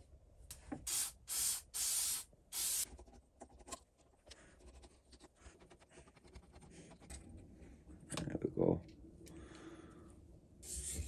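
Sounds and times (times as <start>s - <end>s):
aerosol can spraying: 0.8s - 2.9s.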